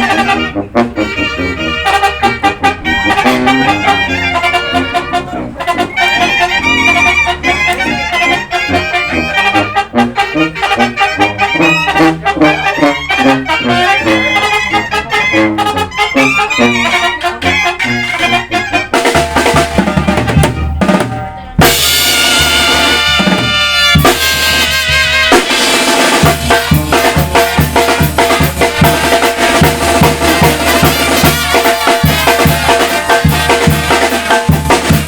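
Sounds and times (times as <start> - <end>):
trumpets and trombones melody: 0.0 - 35.0
snare drum hits: 19.0 - 35.0.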